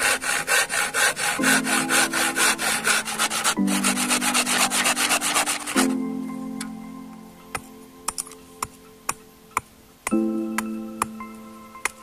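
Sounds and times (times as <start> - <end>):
hand sanding on wood: 0.0 - 6.0
background music with chords: 0.0 - 12.0.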